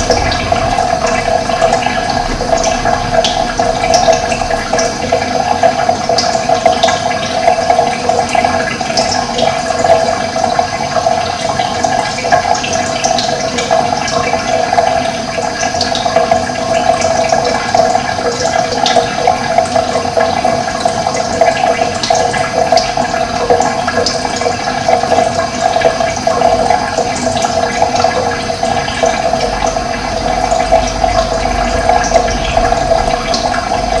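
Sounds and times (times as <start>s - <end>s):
running water: 0.0s - 34.0s.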